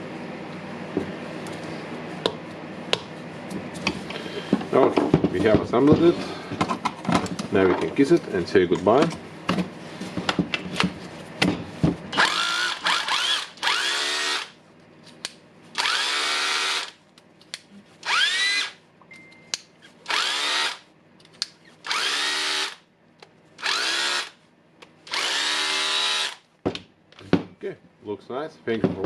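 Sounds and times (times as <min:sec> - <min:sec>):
power tool motor whine: 0:12.2 - 0:14.5, 0:15.8 - 0:17.0, 0:18.0 - 0:18.8, 0:20.1 - 0:20.8, 0:21.9 - 0:22.8, 0:23.6 - 0:24.4, 0:25.1 - 0:26.4.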